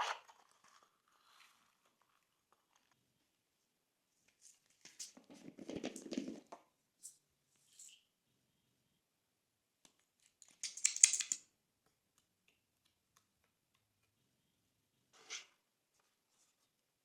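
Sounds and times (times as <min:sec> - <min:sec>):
slime crackling and clicking: 0:10.6 - 0:11.4.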